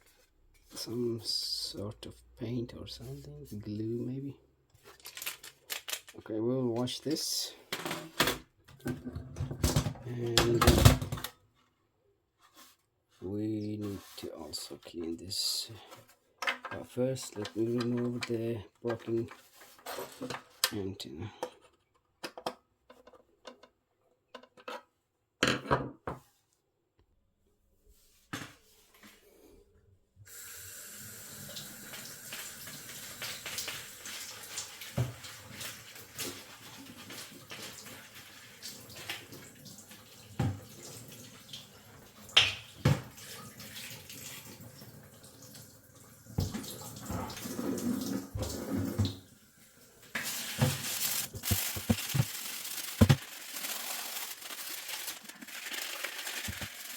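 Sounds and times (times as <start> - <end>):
water tap running into sink: 30.3 - 56.9
parts knocking while washed: 50.2 - 53.3.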